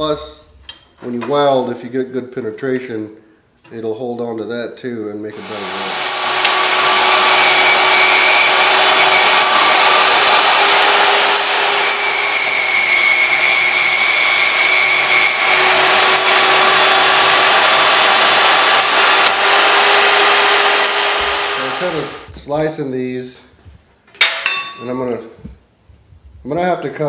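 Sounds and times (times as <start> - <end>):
power tool cutting metal tubing: 5.4 - 22.3.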